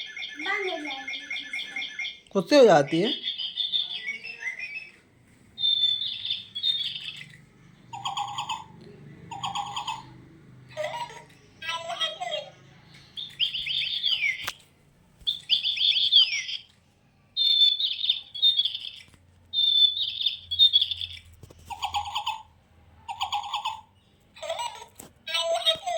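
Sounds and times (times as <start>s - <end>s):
electronic toy bird chirping: 0.0s - 5.0s, 5.6s - 14.6s, 15.2s - 22.5s, 23.1s - 25.9s.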